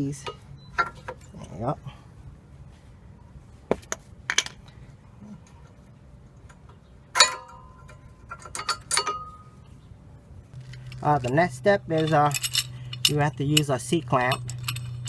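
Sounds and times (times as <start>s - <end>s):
metal brake pads clinking: 6.6s - 9.6s, 10.6s - 15.0s
sharp metal clanks ringing: 7.2s - 9.6s, 10.6s - 15.0s.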